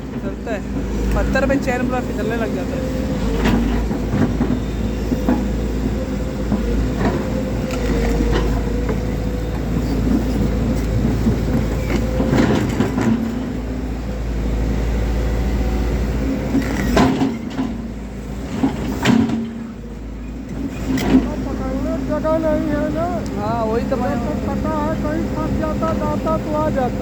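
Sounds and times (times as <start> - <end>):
excavator diesel engine running: 0.0 - 27.0
metal clanks and knocks: 11.0 - 13.5, 16.6 - 17.8, 18.5 - 19.7.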